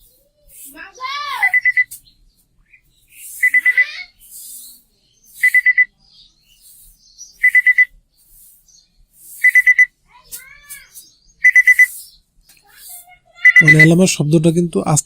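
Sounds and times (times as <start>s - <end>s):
alarm clock beeping: 1.4s - 1.9s, 3.4s - 4.0s, 5.4s - 5.9s, 7.4s - 7.9s, 9.4s - 9.9s, 11.4s - 11.9s, 13.4s - 14.2s.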